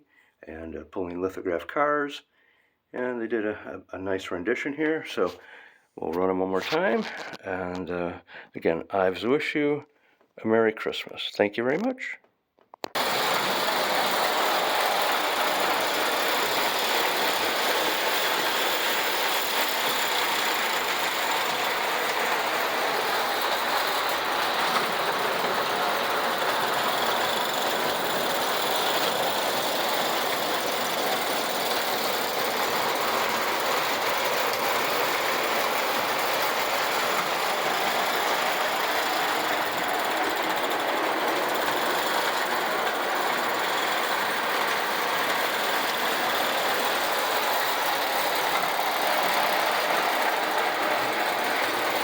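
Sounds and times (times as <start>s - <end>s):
toy train motor whirring: 12.9s - 52.0s.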